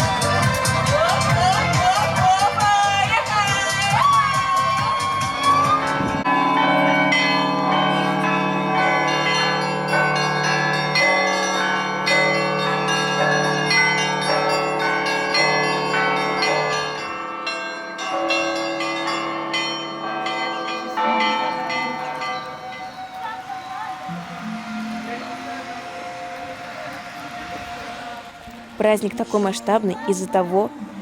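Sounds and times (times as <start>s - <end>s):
small high bells chiming: 0.0s - 28.0s
deep sustained bell tones: 5.9s - 29.5s.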